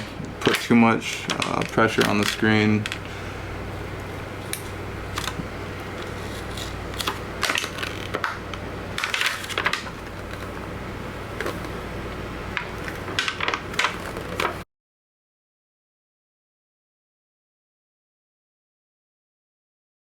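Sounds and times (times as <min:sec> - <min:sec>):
steady low hum: 0:00.0 - 0:14.6
screen protector film peeling: 0:04.6 - 0:08.4.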